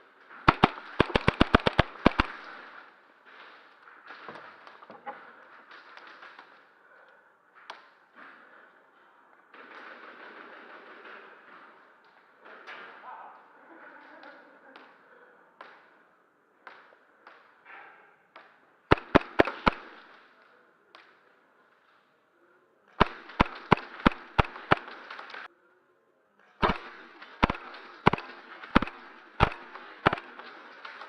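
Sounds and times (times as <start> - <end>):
airsoft pistol shots: 0.5 - 2.6, 18.9 - 20.1, 23.0 - 25.5, 26.6 - 30.4.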